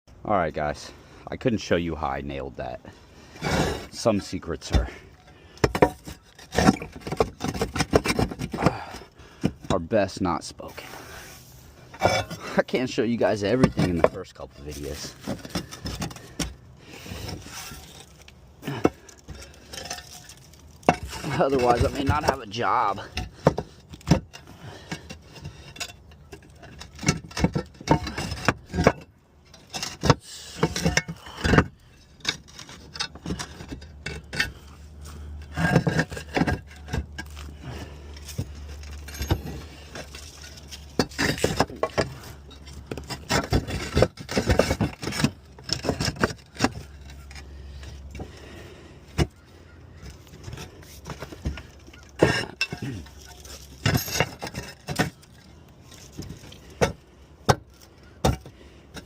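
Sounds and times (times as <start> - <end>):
roof tiles clinking and scraping: 2.9 - 59.0.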